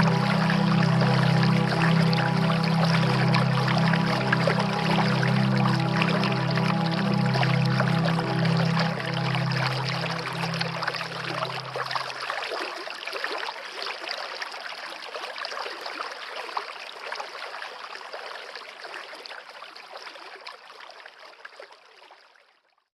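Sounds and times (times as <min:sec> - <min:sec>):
forest stream babbling: 0:00.0 - 0:17.1.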